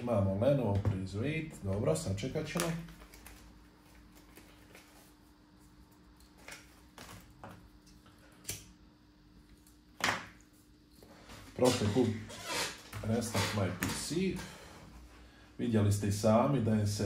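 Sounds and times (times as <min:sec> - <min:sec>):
laptop cooling fan hum: 0:00.0 - 0:17.0.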